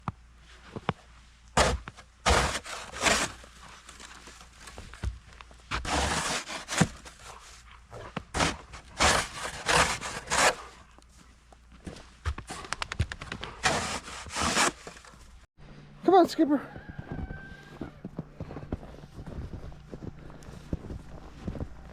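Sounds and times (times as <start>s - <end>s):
footsteps crunching in snow: 16.7s - 21.9s.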